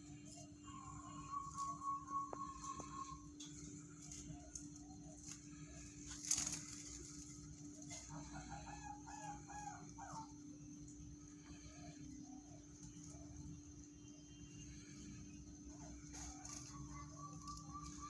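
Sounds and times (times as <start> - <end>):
songbird calling rough notes: 0.0 - 7.0, 14.4 - 18.0
steady low hum: 0.0 - 18.0.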